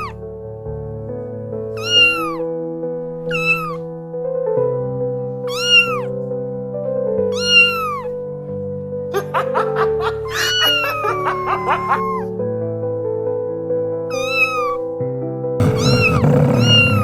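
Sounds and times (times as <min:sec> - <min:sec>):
cat meowing: 0:00.0 - 0:00.2, 0:01.7 - 0:02.5, 0:03.2 - 0:03.9, 0:05.4 - 0:06.2, 0:07.3 - 0:08.2, 0:10.2 - 0:12.3, 0:14.1 - 0:14.9, 0:15.6 - 0:17.0.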